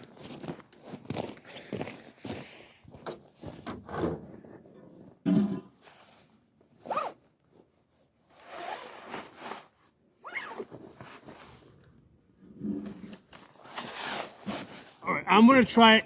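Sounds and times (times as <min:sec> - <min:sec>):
handling and rustling of gear: 0:00.0 - 0:15.1
zipper being pulled: 0:06.8 - 0:07.2, 0:08.3 - 0:11.7, 0:12.5 - 0:14.8.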